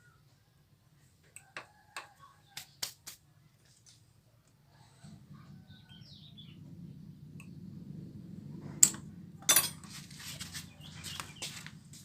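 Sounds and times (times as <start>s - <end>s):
low steady hum: 3.4s - 12.0s
bird chirping: 5.5s - 7.6s, 10.6s - 11.8s
metal tools clinking: 8.8s - 10.0s.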